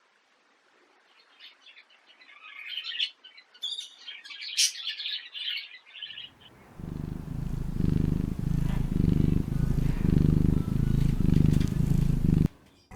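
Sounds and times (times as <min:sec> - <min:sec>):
birds chirping: 0:06.6 - 0:12.5.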